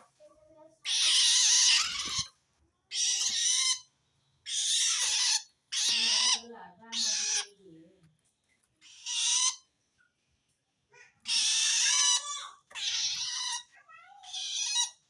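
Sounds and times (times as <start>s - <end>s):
bird rasping screech calls: 11.3s - 15.0s.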